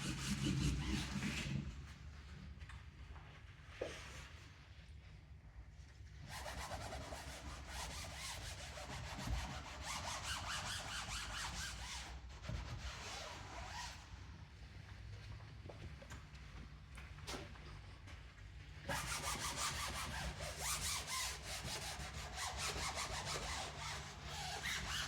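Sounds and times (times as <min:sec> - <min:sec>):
rubbing on inflatable boat tube: 0:06.3 - 0:14.0, 0:18.9 - 0:25.0.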